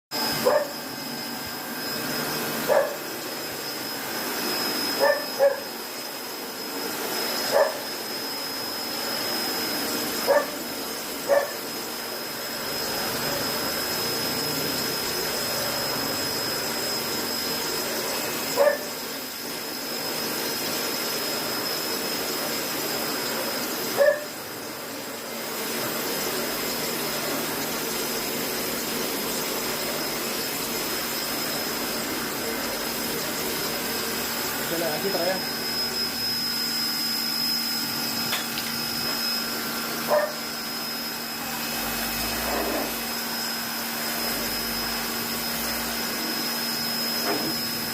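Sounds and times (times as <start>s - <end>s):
machine hiss with high whine: 0.2s - 47.9s
dog barking: 0.4s - 0.7s, 2.7s - 3.0s, 5.0s - 5.7s, 7.5s - 7.8s, 10.3s - 10.6s, 11.3s - 11.6s, 18.6s - 18.9s, 24.0s - 24.3s, 40.1s - 40.4s.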